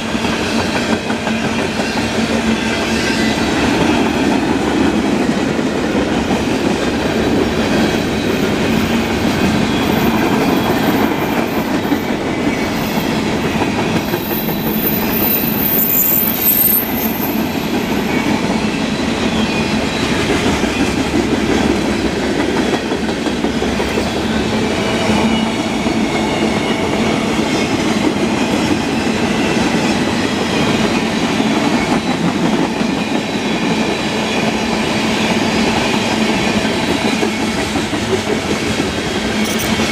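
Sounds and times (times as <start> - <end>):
freight train rolling past: 0.0 - 39.9
high wheel squeal: 7.9 - 20.8.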